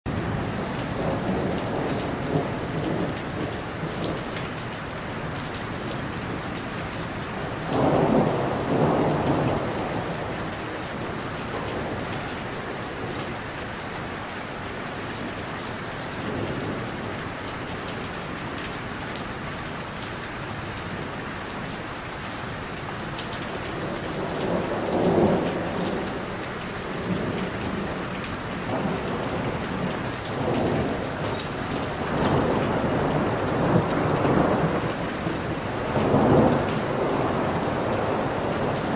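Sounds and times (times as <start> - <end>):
thunder rumbling: 0.1 - 4.7, 7.4 - 13.5, 22.8 - 38.9
steady rain falling: 0.1 - 38.9.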